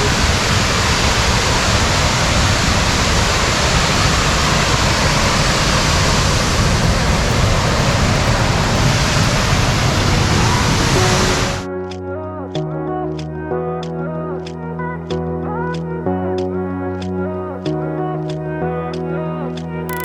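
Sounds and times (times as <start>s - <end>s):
waterfall rushing: 0.0s - 11.6s.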